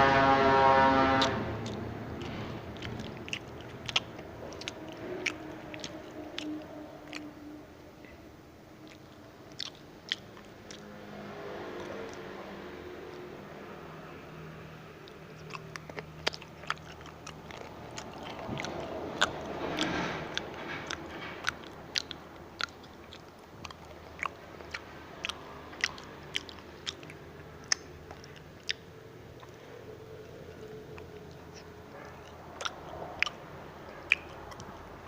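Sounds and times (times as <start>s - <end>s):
crunchy food being chewed: 0.9s - 8.2s, 8.8s - 13.4s, 14.4s - 35.0s.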